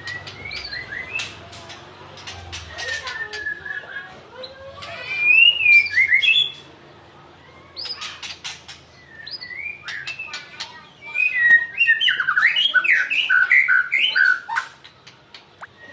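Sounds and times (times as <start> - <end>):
bird singing whistled phrases: 3.0 - 4.0, 5.2 - 6.6, 9.0 - 10.4, 11.0 - 14.6, 15.6 - 15.9.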